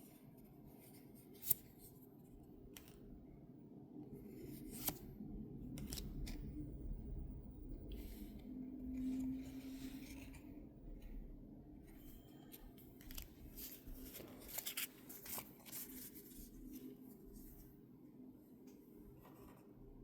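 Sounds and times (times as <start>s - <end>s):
cards crinkling and rustling: 12.5s - 16.9s.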